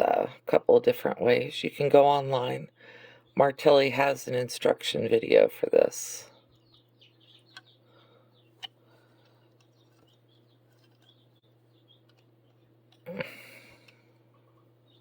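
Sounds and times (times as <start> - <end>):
low steady hum: 0.0 - 15.0
faint bird chirps: 6.3 - 15.0.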